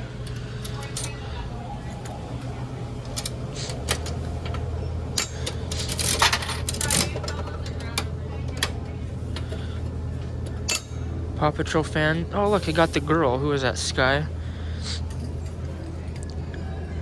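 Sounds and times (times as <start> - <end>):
coins clicking into machine: 0.2 - 1.4, 3.0 - 8.8, 10.5 - 11.1
coins rattling: 5.2 - 7.5.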